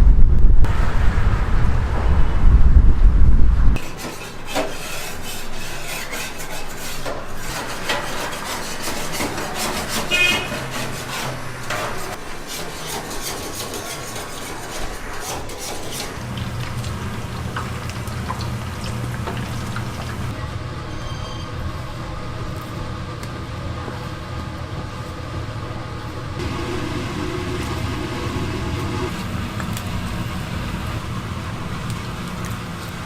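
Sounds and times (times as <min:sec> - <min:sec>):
utensils scraping and clinking cookware: 0:03.8 - 0:16.8
steady low hum: 0:21.6 - 0:33.0.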